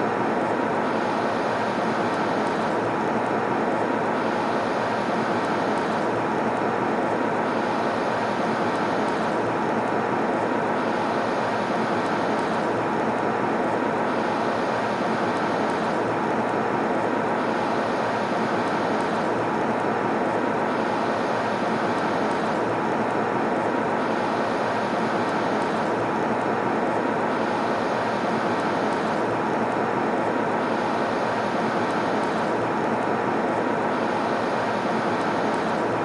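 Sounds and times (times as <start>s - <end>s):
airliner cabin engine rush: 13.8s - 16.0s.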